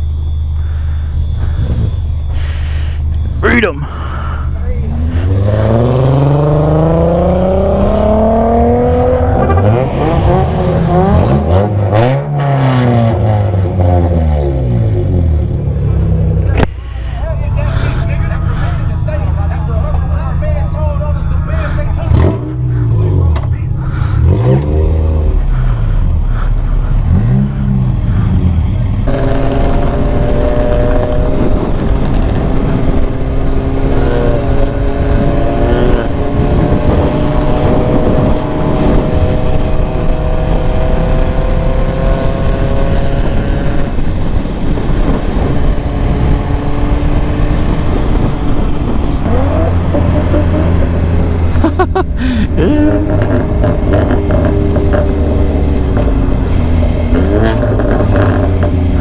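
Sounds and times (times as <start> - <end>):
motorcycle engine revving: 4.2 - 13.4, 17.7 - 59.0
heavy wind rush: 13.6 - 59.0.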